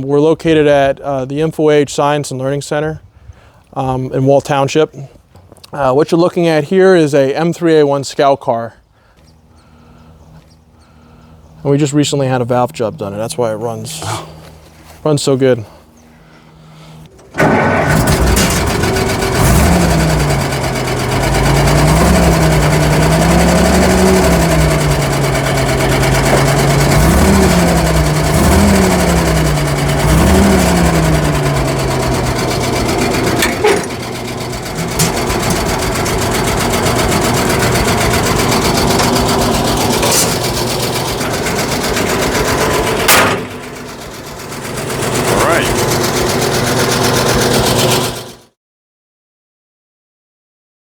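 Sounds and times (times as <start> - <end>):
petrol engine revving and idling: 16.6 - 48.5.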